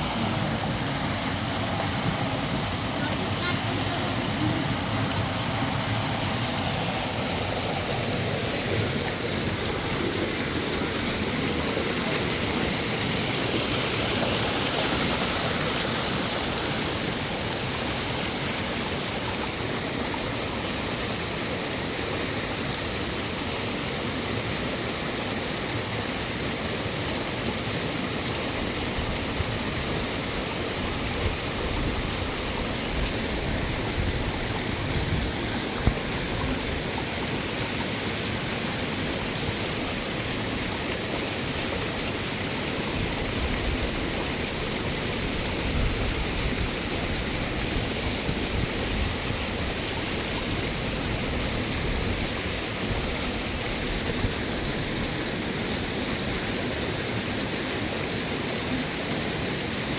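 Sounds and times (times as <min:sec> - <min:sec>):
river water flowing: 0:00.0 - 0:59.9.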